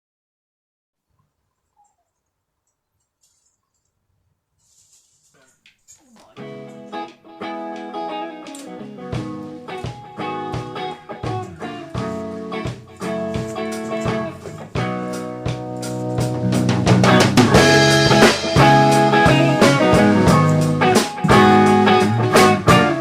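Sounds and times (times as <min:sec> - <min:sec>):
guitar music: 0:06.0 - 0:23.0
steady drum beat: 0:09.2 - 0:23.0.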